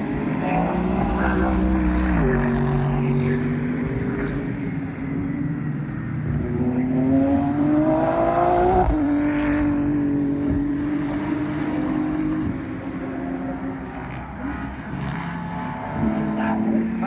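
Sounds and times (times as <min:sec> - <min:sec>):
race car engine accelerating: 0:00.0 - 0:04.9, 0:06.3 - 0:12.7.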